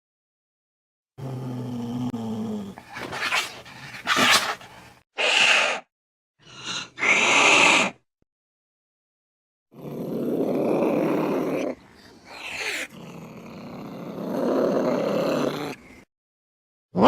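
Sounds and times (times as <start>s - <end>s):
cat hissing and spitting: 2.8s - 5.9s, 6.6s - 8.0s, 12.2s - 12.9s
cat growling: 9.8s - 16.0s.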